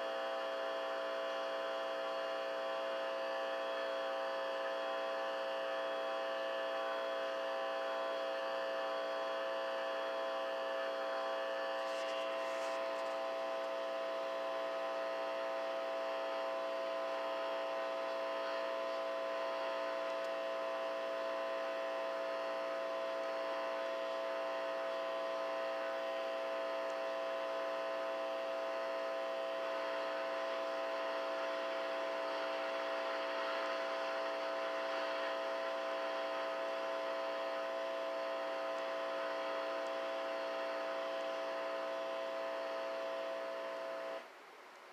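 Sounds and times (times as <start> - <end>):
guitar amplifier electrical buzzing: 36.7 - 44.2.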